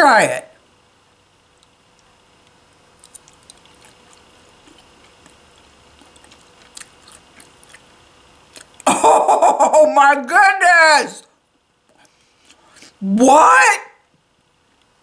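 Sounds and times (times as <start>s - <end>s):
person exclaiming: 0.0s - 0.4s, 8.9s - 11.3s, 13.0s - 14.0s
chewing soft candy: 1.5s - 8.9s.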